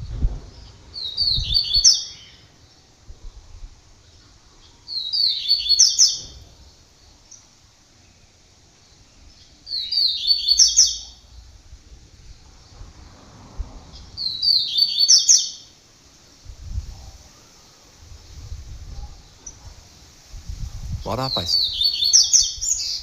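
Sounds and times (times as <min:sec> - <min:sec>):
songbird singing: 0:00.0 - 0:23.0.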